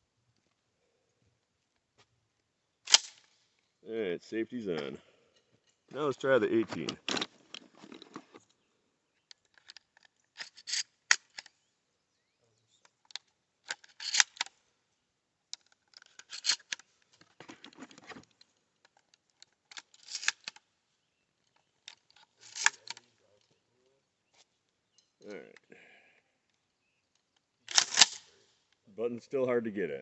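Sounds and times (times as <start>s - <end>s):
shotgun shells loading clicks: 2.8s - 3.4s, 9.3s - 11.6s, 12.8s - 14.6s, 15.4s - 17.7s, 18.3s - 20.8s, 21.4s - 23.1s, 26.5s - 28.8s.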